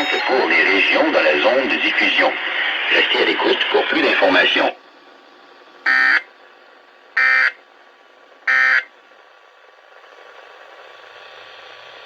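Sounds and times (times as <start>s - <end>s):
faint radio hiss: 0.0s - 5.2s.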